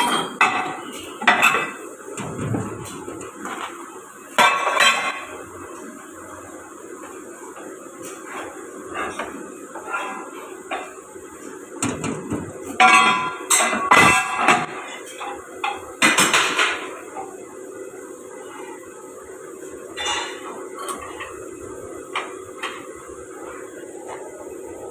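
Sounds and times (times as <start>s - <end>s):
metal objects clanking: 0.0s - 3.5s
steady machine hum: 0.0s - 24.9s.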